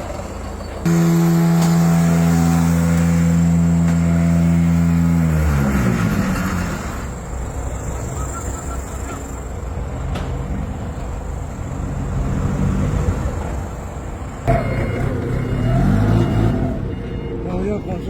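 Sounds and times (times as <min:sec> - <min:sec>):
rough mechanical running noise: 0:00.1 - 0:08.0
machine humming winding down: 0:00.9 - 0:07.2.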